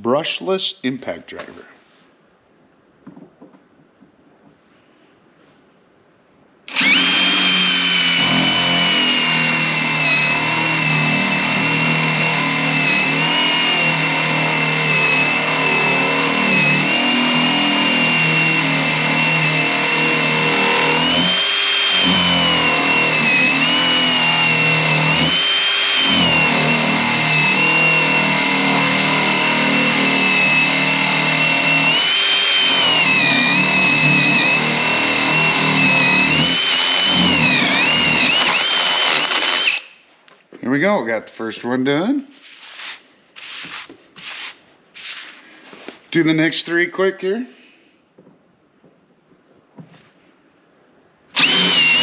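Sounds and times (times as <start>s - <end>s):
impact driver motor whining: 6.7s - 39.9s, 51.4s - 52.0s.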